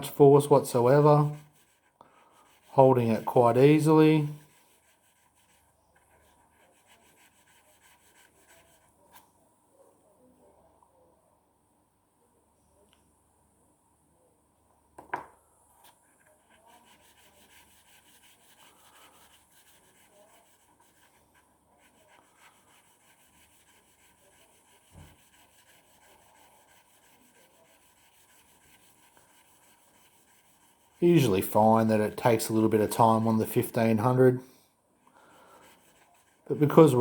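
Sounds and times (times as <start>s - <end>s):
blade rubbing on sandpaper: 0.1s - 8.9s, 16.4s - 34.2s, 35.5s - 37.0s.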